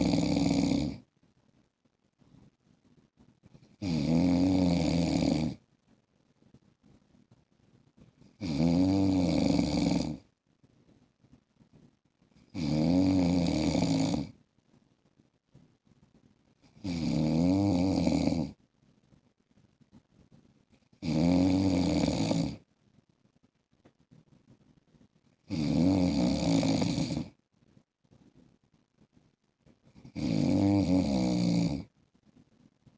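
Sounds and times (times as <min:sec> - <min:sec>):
man snoring: 0:00.0 - 0:01.0, 0:03.8 - 0:05.6, 0:08.4 - 0:10.2, 0:12.5 - 0:14.4, 0:16.8 - 0:18.6, 0:21.0 - 0:22.6, 0:25.5 - 0:27.4, 0:30.0 - 0:31.9.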